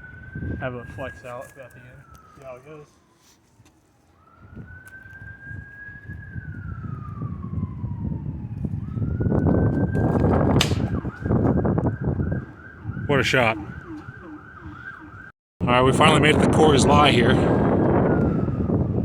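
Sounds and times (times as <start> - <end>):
wind rumbling on microphone: 0.0 - 2.5, 4.2 - 19.0
emergency vehicle siren wailing: 0.0 - 19.0
sharp click: 10.6 - 11.0.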